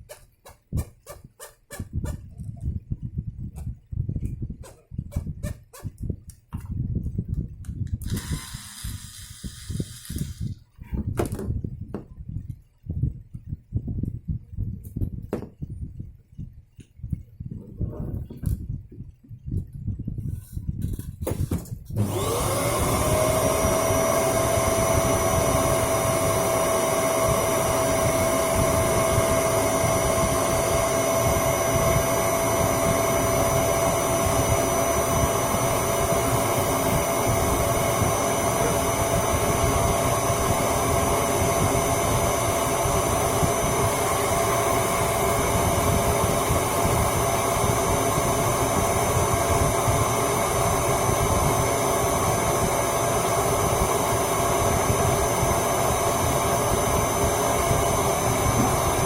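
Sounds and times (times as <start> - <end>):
electric motor whining: 8.0 - 10.6, 22.0 - 59.0.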